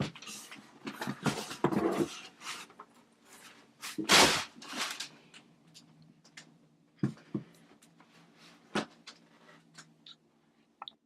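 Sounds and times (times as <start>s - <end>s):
packaging rustling and scraping: 0.2s - 5.1s.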